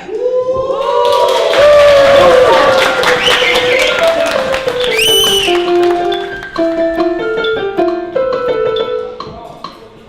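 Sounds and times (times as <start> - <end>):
piano melody: 2.2 - 10.0.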